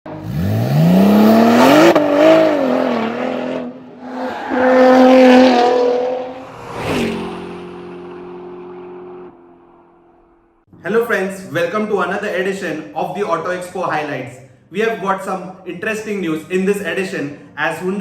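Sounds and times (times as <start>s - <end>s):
car engine revving: 0.1s - 10.6s
sharp whoosh: 6.2s - 9.0s.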